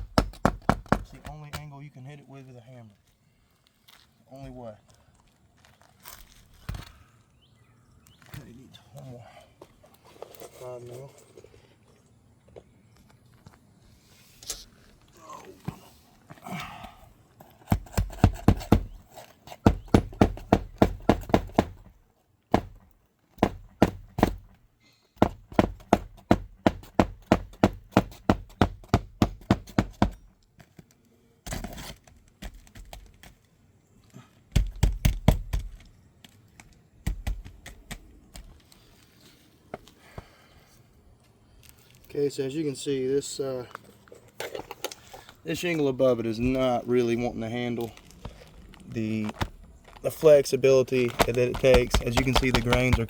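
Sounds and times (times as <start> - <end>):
hammer tapping roofing nail: 0.0 - 1.3, 17.7 - 19.0, 19.6 - 21.9, 22.5 - 24.6, 25.2 - 30.2, 34.5 - 35.9, 37.0 - 38.5, 51.1 - 53.0.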